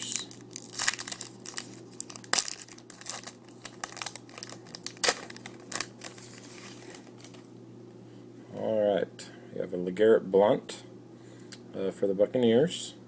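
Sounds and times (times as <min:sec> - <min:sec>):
foil wrapper crinkling and tearing: 0:00.0 - 0:07.5.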